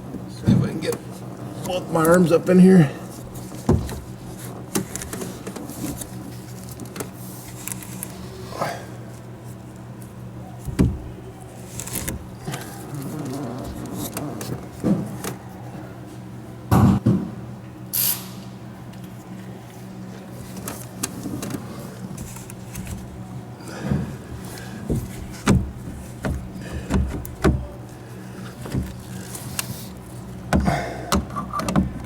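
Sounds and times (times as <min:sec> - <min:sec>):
steady low hum: 0:00.0 - 0:32.0
tools knocking on roof panel: 0:03.6 - 0:04.2, 0:24.8 - 0:27.8, 0:30.5 - 0:32.0.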